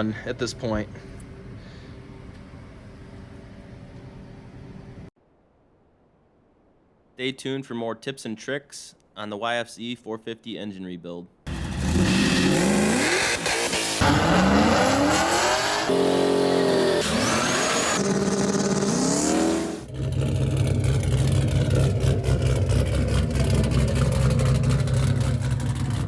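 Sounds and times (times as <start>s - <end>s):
engine revving: 11.5s - 26.0s.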